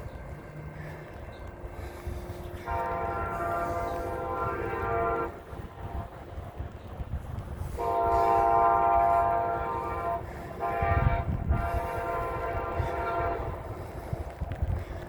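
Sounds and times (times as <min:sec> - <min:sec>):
low rumble: 0:00.0 - 0:15.0
locomotive horn chord blasts: 0:02.5 - 0:06.2, 0:07.7 - 0:13.7.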